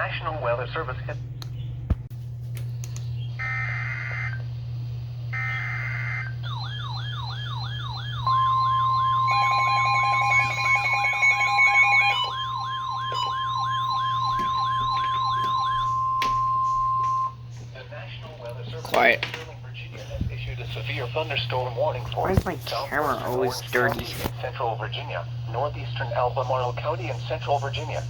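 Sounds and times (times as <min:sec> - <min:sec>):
steady warning alarm tone: 0:03.4 - 0:04.4, 0:05.3 - 0:17.6
wailing alert tone: 0:05.4 - 0:17.4
pulsing beep: 0:08.2 - 0:17.4.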